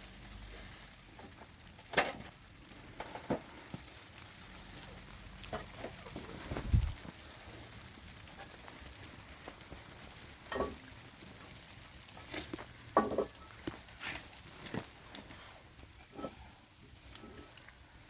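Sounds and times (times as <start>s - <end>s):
food sizzling in a pan: 0.0s - 18.0s
utensil scraping and knocking pan: 16.0s - 16.5s.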